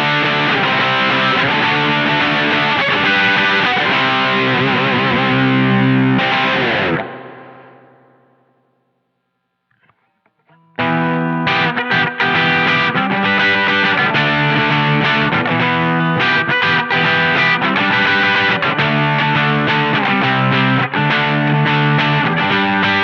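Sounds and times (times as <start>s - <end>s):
electric guitar chords: 0.0s - 8.9s, 10.5s - 23.0s
guitar string clicks: 9.7s - 10.7s.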